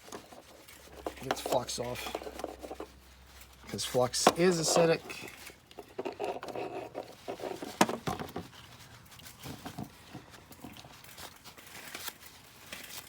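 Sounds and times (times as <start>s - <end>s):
rag rustling on wire: 0.0s - 13.0s.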